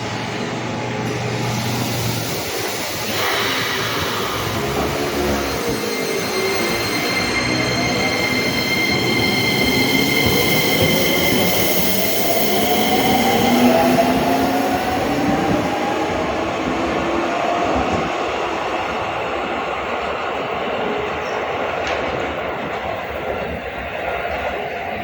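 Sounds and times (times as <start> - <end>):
train wheels rumbling: 0.0 - 25.0
electric train motors whining: 1.0 - 18.7.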